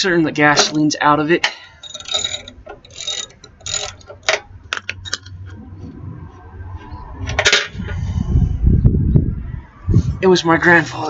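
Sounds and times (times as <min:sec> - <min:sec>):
metal parts clicking and clanking: 0:00.4 - 0:05.6, 0:07.3 - 0:07.8
low rumbling handling noise: 0:01.8 - 0:10.2.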